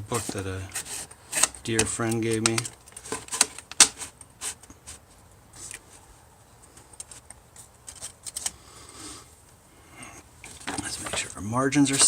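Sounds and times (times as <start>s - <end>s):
paper rustling: 0.0s - 6.0s, 10.4s - 12.0s.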